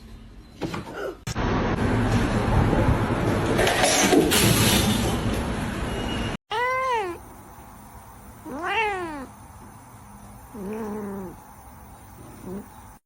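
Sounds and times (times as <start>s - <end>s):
cat meowing: 6.5s - 7.2s, 8.4s - 9.4s.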